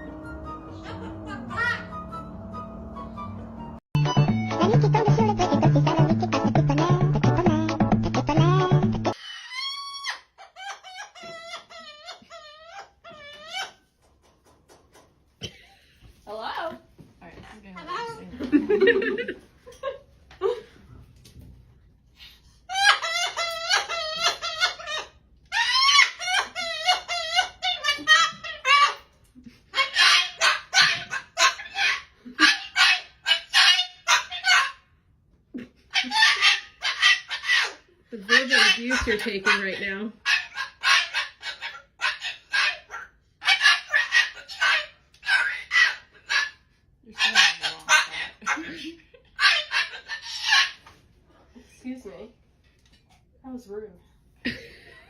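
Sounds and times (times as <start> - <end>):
bird calling: 0.0 - 3.5
music: 0.0 - 9.1
dog yapping: 22.7 - 29.1, 29.8 - 34.9, 36.0 - 46.6, 47.2 - 48.6, 49.4 - 50.9.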